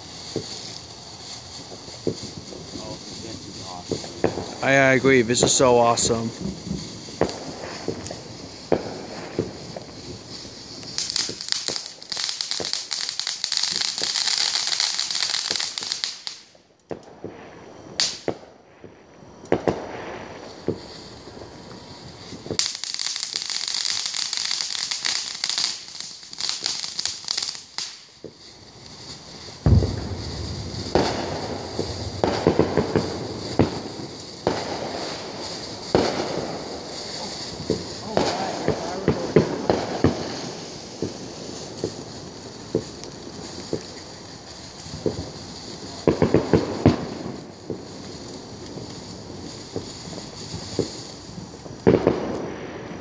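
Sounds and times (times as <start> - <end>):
firework sharp crack: 0.0 - 53.0
fireworks crackling: 0.0 - 53.0
rapid firework popping: 0.0 - 53.0
firework loud bang: 1.6 - 10.2, 29.6 - 42.1.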